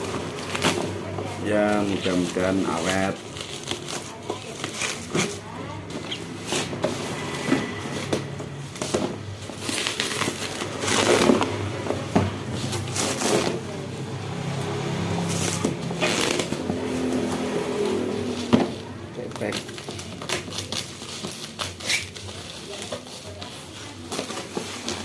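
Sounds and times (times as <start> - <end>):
packaging crackling and rustling: 0.0 - 14.1, 14.8 - 25.0.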